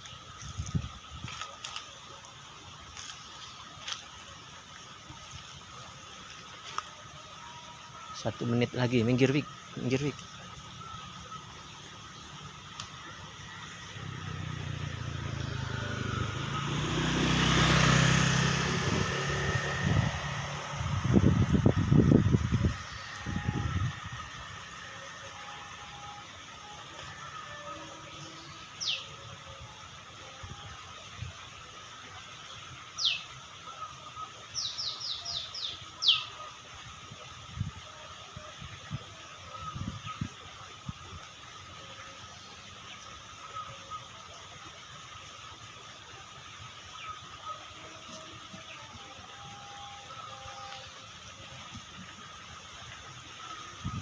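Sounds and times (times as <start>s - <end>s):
motor vehicle passing by: 9.4s - 33.5s
bird calling with falling notes: 21.6s - 31.0s, 32.6s - 36.6s.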